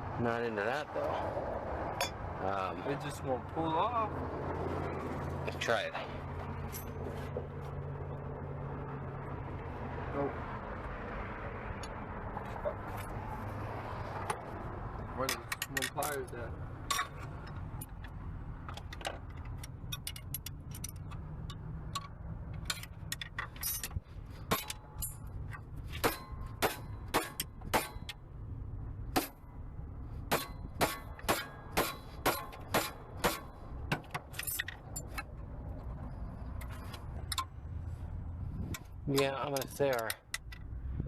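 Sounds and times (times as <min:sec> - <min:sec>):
sharp metallic taps: 0:15.2 - 0:28.2, 0:30.3 - 0:35.4
hand tools striking metal: 0:22.7 - 0:25.2, 0:26.0 - 0:28.2, 0:30.3 - 0:35.3.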